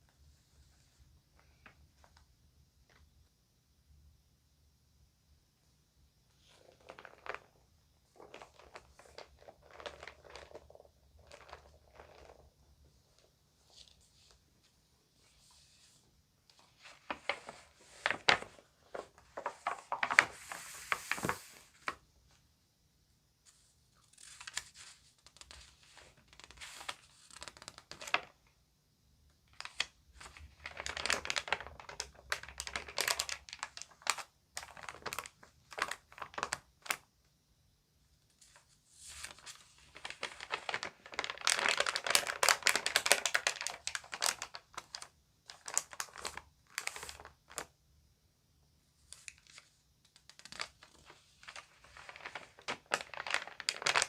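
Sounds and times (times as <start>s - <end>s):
magazine pages rustling and turning: 6.4s - 22.0s, 23.5s - 28.4s, 29.5s - 37.0s, 38.4s - 47.7s, 49.1s - 54.0s.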